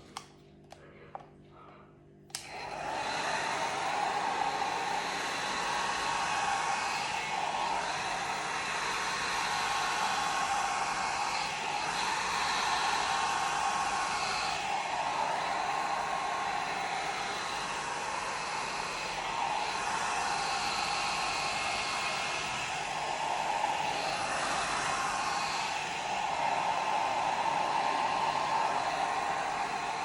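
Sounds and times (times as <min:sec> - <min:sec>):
hair dryer blowing air: 0:00.0 - 0:00.2, 0:02.3 - 0:30.0
hair dryer switch click: 0:02.3 - 0:03.2.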